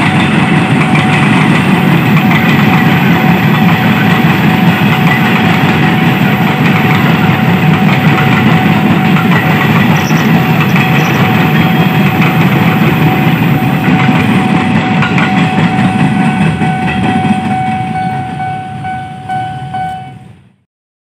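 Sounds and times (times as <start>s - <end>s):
train wheels rumbling on rails: 0.0s - 20.6s
faint steady high tone: 17.5s - 20.3s.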